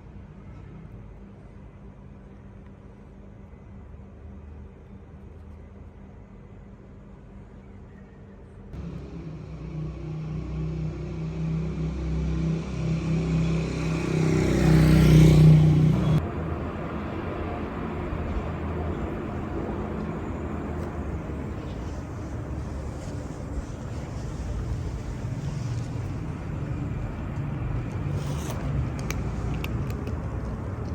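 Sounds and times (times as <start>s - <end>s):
vehicle engine humming: 8.8s - 30.9s.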